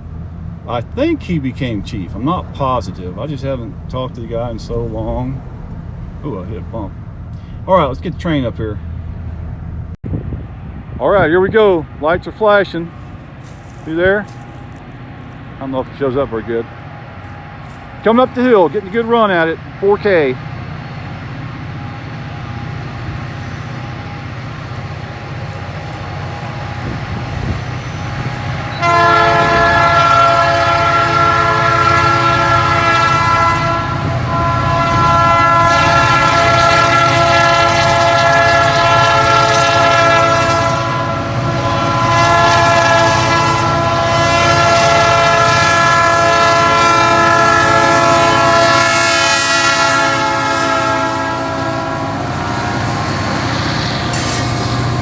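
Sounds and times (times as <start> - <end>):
locomotive engine rumble: 0.0 - 55.0
locomotive air horn: 23.8 - 55.0.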